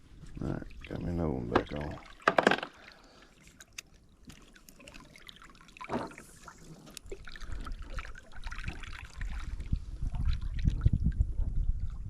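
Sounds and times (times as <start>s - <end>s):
fishing gear clicking and knocking: 1.5s - 2.8s.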